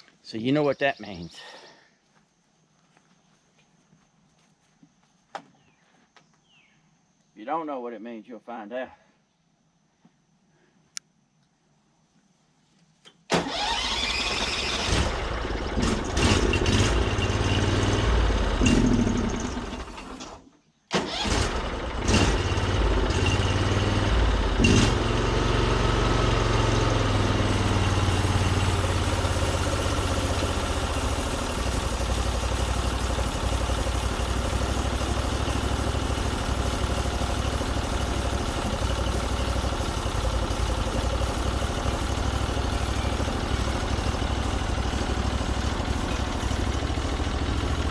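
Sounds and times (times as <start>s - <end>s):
gas engine running: 13.4s - 20.2s, 21.1s - 47.9s.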